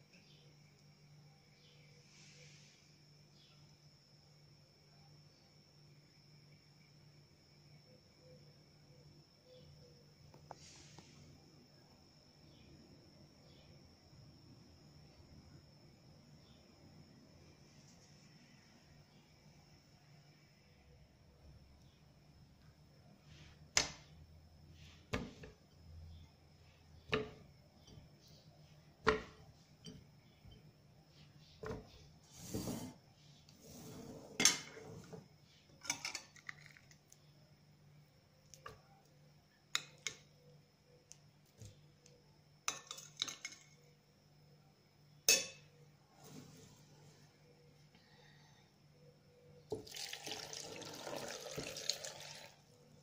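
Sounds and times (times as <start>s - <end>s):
dishes and utensils clinking: 34.4s - 35.1s, 35.8s - 36.7s, 45.3s - 45.7s.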